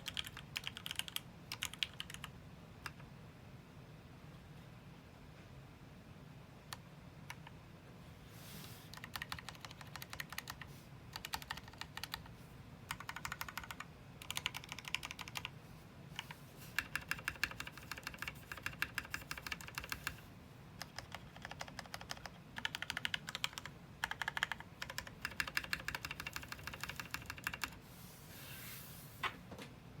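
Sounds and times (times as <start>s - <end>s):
mechanical keyboard typing: 0.0s - 3.0s, 8.9s - 12.3s, 12.9s - 15.5s, 16.2s - 20.2s, 20.8s - 27.8s.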